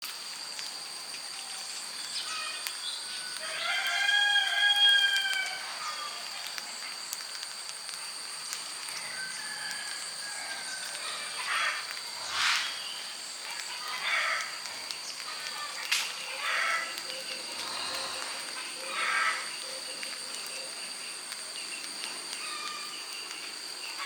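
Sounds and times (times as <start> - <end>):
birds calling: 10.8 - 24.0.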